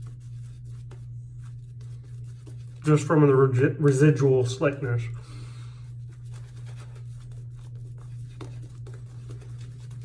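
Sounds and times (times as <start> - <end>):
shave brush scratchy strokes: 0.0 - 3.4, 5.8 - 10.0.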